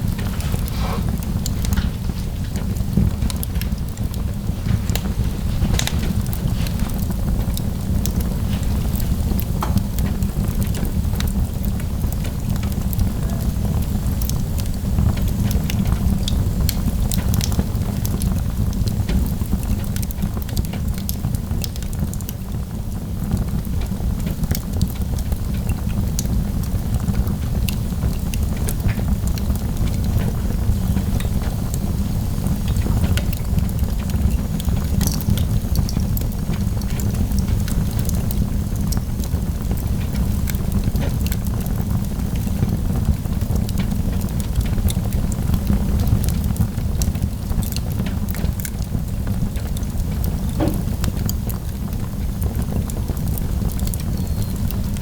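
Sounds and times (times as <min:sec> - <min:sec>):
wood fire crackling: 0:00.0 - 0:55.0
sharp pops: 0:50.6 - 0:51.3.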